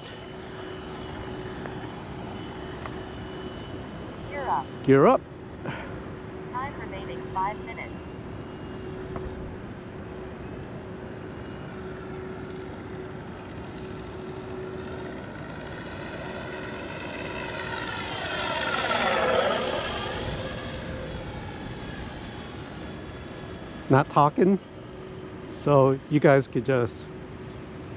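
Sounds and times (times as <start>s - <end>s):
simulated radial engine sound: 0.0s - 27.9s
model plane flying past: 6.4s - 24.7s.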